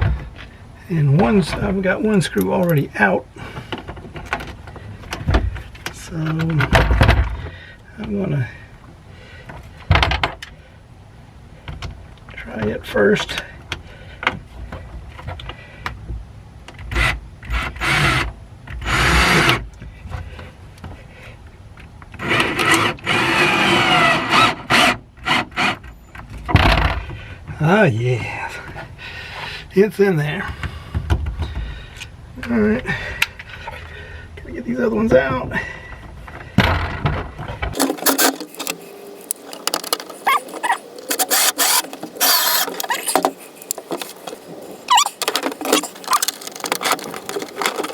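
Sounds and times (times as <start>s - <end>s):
drill driving screw into plastic: 22.2s - 25.8s, 37.8s - 38.8s, 39.8s - 43.4s
handling clicks and knocks: 35.9s - 47.9s
short high squeaks: 37.8s - 38.8s, 40.1s - 43.4s, 44.9s - 47.0s.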